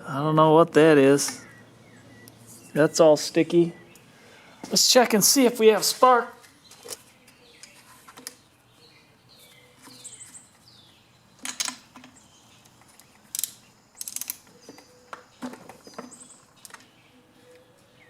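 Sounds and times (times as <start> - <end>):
faint birds chirping: 0.0 - 18.0
ratchet wrench clicking: 13.3 - 14.4.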